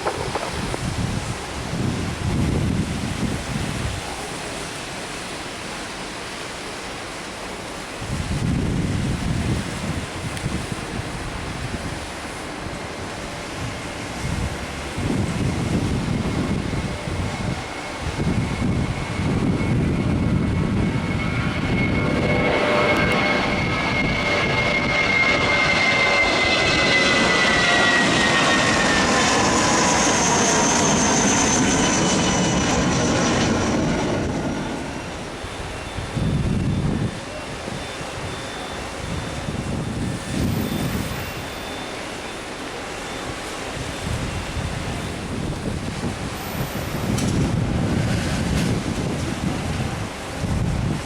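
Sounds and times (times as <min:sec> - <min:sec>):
wind buffeting microphone: 0:00.0 - 0:04.4, 0:08.0 - 0:41.5, 0:43.7 - 0:51.0
airliner engines rumbling and whining: 0:00.0 - 0:51.0.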